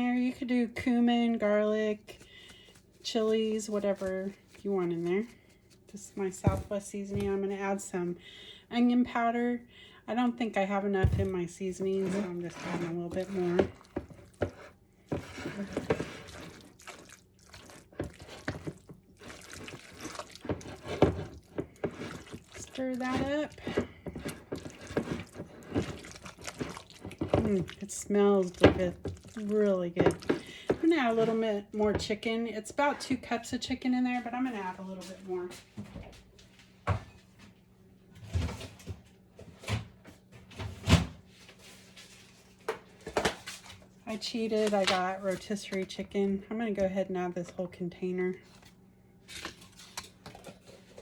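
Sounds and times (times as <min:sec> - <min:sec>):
spoon stirring wet mix: 0:01.8 - 0:07.7, 0:11.0 - 0:32.3, 0:49.3 - 0:51.0.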